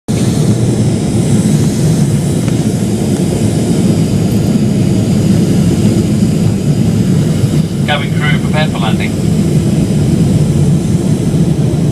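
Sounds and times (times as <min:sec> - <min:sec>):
jet engine roar in cabin: 0:00.1 - 0:11.9.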